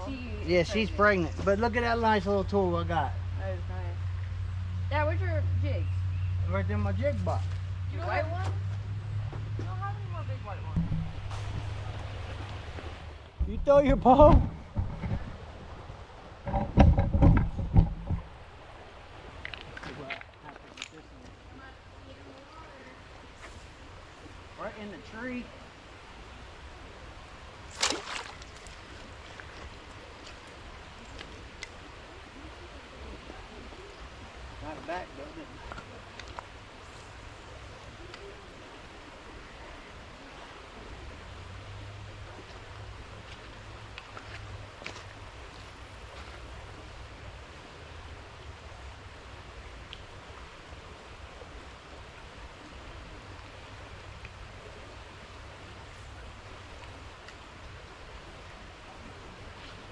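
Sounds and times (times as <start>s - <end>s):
creek water rushing: 0.0s - 59.9s
sudden loud noise: 10.8s - 12.3s.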